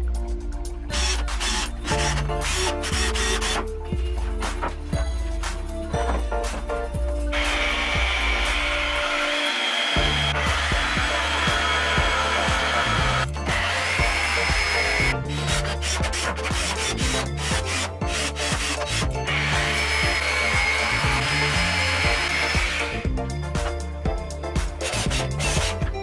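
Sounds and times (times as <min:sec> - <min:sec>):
background music with steady beat: 0:00.0 - 0:26.0
tool working wood: 0:00.9 - 0:03.7, 0:07.3 - 0:23.7, 0:24.7 - 0:26.0.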